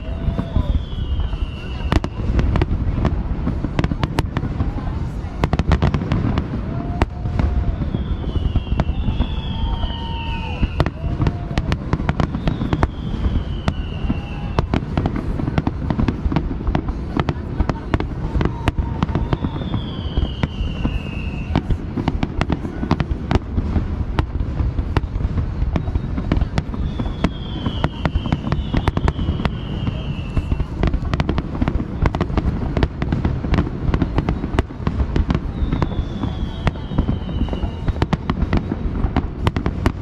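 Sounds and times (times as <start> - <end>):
fireworks booms and cracks: 0.0 - 40.0
falling whistle: 0.2 - 2.3, 7.6 - 11.2, 12.2 - 14.8, 19.0 - 21.7, 26.8 - 30.7, 35.5 - 38.0.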